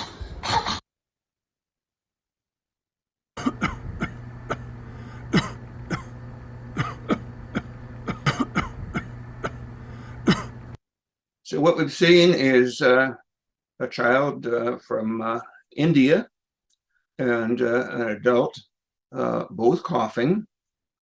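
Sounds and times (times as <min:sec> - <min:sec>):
person coughing dry coughs: 0:03.4 - 0:06.2, 0:06.8 - 0:10.7
low room hum: 0:03.4 - 0:10.8.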